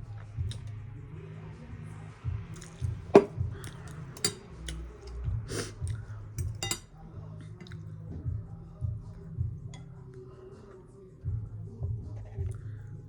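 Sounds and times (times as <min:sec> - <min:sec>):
muffled bass beat music: 0:00.0 - 0:13.0
utensils clinking against dishes: 0:02.6 - 0:05.2, 0:06.4 - 0:06.9.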